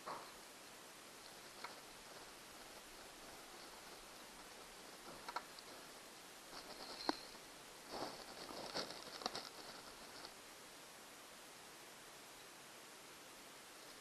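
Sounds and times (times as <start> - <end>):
small tools scratching and clicking: 6.5 - 7.4.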